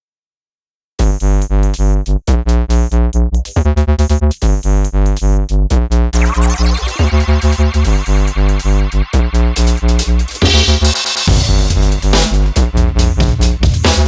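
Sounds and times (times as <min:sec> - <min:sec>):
pulsing bass beat: 0:01.0 - 0:14.0
synthesizer chords: 0:06.2 - 0:13.2.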